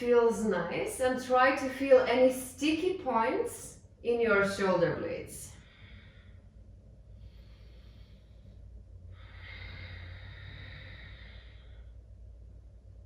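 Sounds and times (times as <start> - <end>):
low steady hum: 0.0 - 13.0
woman breathing: 5.5 - 12.7.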